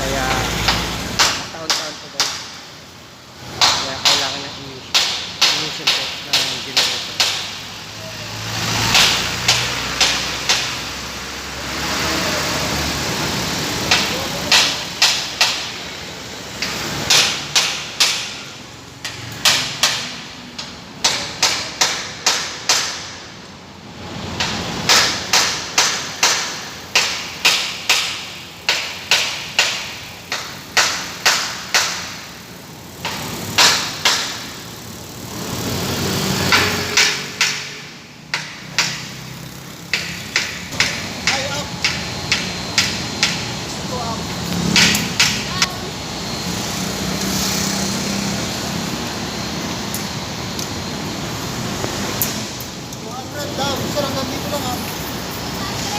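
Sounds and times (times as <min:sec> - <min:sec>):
sharp knocks like hammering: 0:00.2 - 0:02.7, 0:03.5 - 0:07.7, 0:08.6 - 0:10.8, 0:13.9 - 0:15.8, 0:16.6 - 0:23.3, 0:24.4 - 0:32.2, 0:33.0 - 0:34.5, 0:36.4 - 0:39.3, 0:39.9 - 0:43.5, 0:44.6 - 0:45.6.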